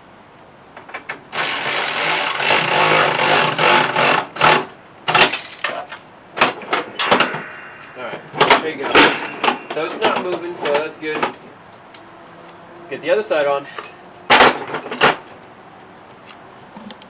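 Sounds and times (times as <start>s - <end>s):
power tool driving a bolt: 1.3s - 5.6s.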